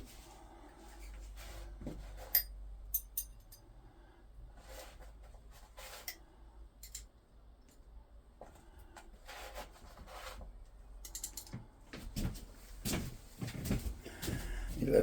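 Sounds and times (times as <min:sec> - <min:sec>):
spanners clicking and tapping: 0:02.3 - 0:03.6, 0:06.8 - 0:07.1, 0:11.0 - 0:11.6.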